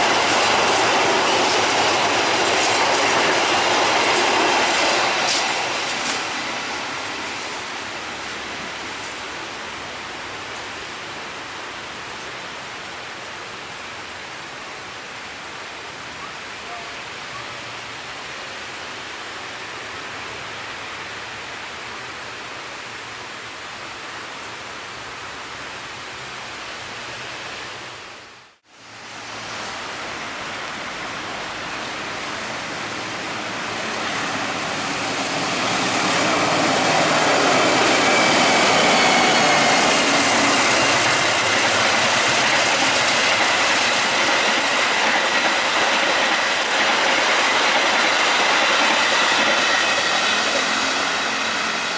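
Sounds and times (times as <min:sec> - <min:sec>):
wheels clicking over rail joints: 0:00.0 - 0:07.6, 0:32.5 - 0:51.6
wheels squealing on rails: 0:00.0 - 0:13.3, 0:30.9 - 0:51.9
train passing at speed: 0:00.0 - 0:15.8, 0:28.7 - 0:51.9.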